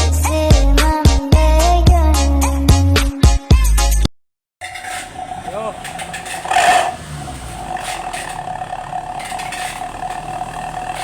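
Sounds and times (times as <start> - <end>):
engine running through exhaust: 4.6 - 11.0.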